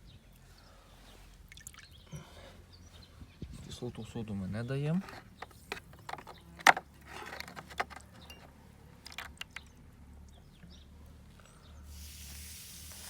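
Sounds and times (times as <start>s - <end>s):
brass cartridge cases clicking: 5.0s - 9.7s
steady hiss: 11.9s - 13.0s.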